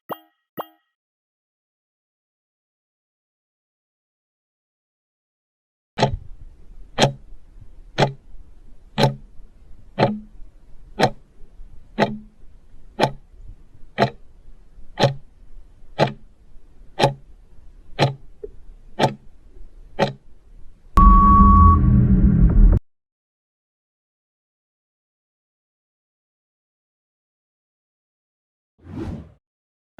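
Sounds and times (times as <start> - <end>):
countdown clock ticking: 0.1 - 0.8, 6.0 - 19.4, 20.0 - 20.3
electronic sting tone: 21.0 - 22.8.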